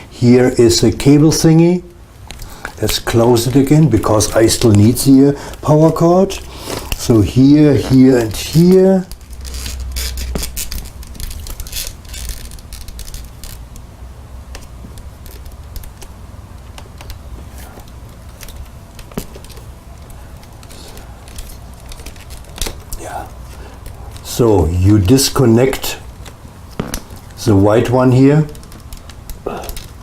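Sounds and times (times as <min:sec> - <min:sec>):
plastic parts clicking and rattling: 0:07.8 - 0:13.8, 0:14.5 - 0:24.3, 0:28.5 - 0:30.0.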